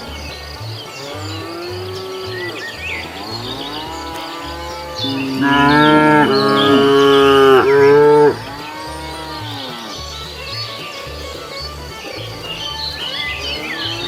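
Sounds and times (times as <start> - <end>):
cows mooing: 3.2 - 9.9.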